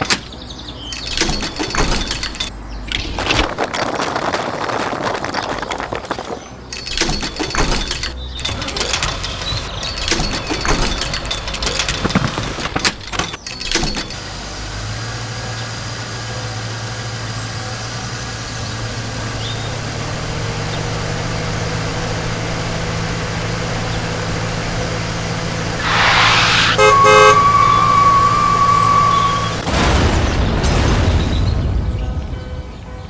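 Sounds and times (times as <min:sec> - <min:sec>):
low engine hum: 0:14.2 - 0:29.7
short whoosh: 0:25.8 - 0:27.3
high horn-like toot: 0:25.8 - 0:29.6.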